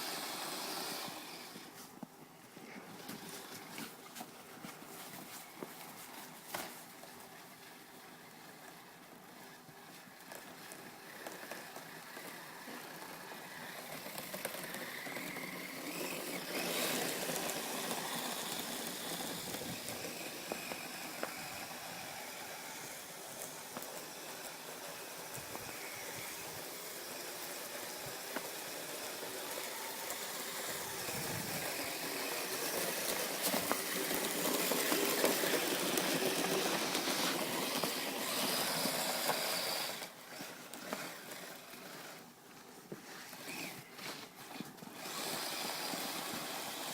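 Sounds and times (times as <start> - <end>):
electric motor whining: 0.0 - 1.7, 10.6 - 42.2, 43.1 - 46.9.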